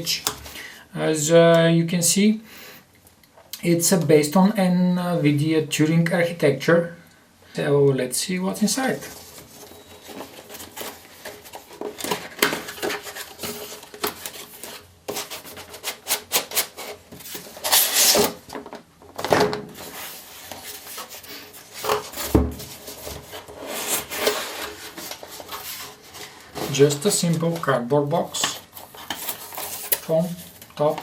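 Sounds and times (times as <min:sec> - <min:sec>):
cardboard scrapes: 0:12.8 - 0:18.4, 0:19.8 - 0:27.0
cardboard sliding and rubbing: 0:19.7 - 0:27.1.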